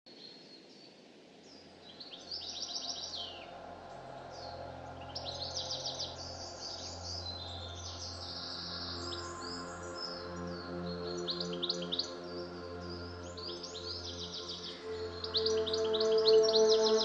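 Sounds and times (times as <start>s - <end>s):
songbirds singing and chirping: 0.1s - 17.0s.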